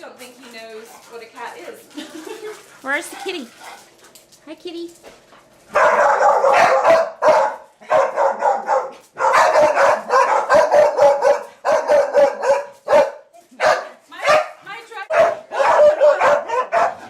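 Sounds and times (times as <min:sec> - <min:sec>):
dog barking: 0:05.7 - 0:17.0.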